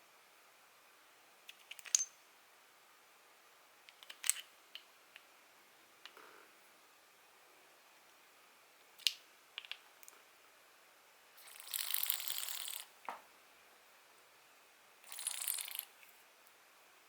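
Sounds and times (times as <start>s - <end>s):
fishing reel ratcheting clicks: 11.4s - 12.9s, 15.1s - 15.9s.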